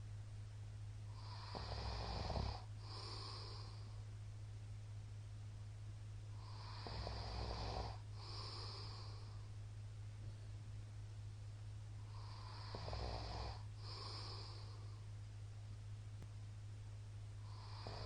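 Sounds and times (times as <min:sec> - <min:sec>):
man snoring: 0:01.1 - 0:04.0, 0:06.4 - 0:09.4, 0:12.1 - 0:14.9, 0:17.4 - 0:18.0
breathy out-breath: 0:02.8 - 0:04.0, 0:13.8 - 0:15.1.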